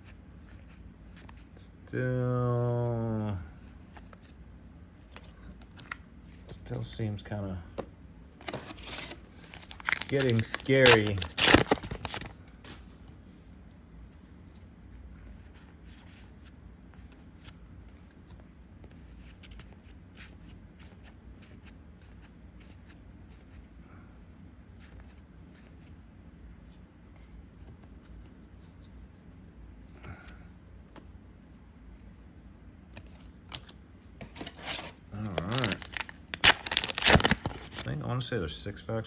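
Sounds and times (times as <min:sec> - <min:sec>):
low steady hum: 0:00.0 - 0:39.0
cards being handled: 0:03.8 - 0:04.4, 0:05.0 - 0:07.1, 0:07.7 - 0:13.2, 0:14.1 - 0:23.6, 0:32.9 - 0:38.0.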